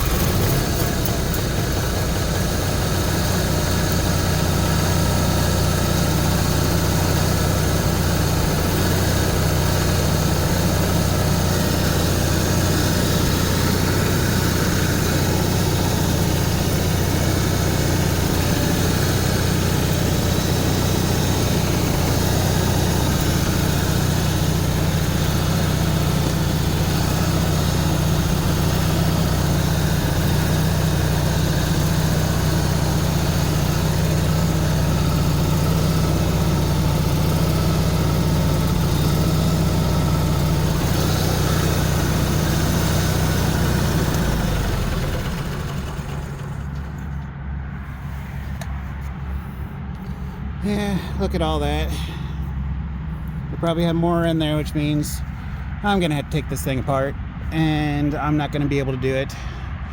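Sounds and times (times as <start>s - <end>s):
generator running: 0.0s - 59.9s.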